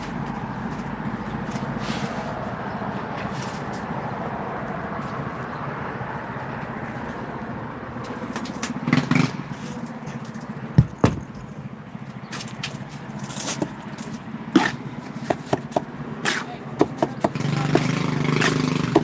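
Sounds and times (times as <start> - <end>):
tools knocking and scraping stone: 10.8 - 11.6, 14.6 - 19.0.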